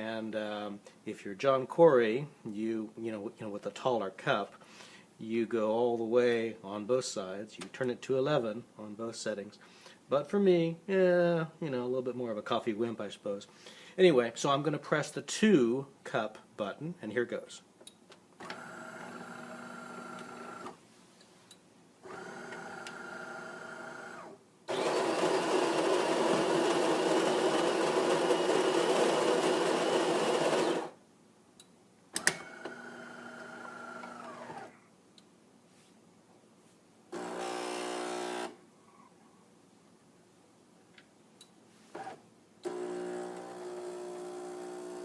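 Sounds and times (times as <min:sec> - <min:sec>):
coffee grinder grinding beans: 0:18.6 - 0:20.6, 0:22.1 - 0:31.0, 0:32.6 - 0:34.6, 0:37.2 - 0:38.6, 0:42.7 - 0:45.0
espresso machine motor humming: 0:18.6 - 0:20.6, 0:22.1 - 0:31.0, 0:32.5 - 0:34.7, 0:37.2 - 0:38.6, 0:42.0 - 0:45.0
pump buzzing: 0:22.1 - 0:30.9, 0:37.2 - 0:38.6, 0:42.6 - 0:45.0.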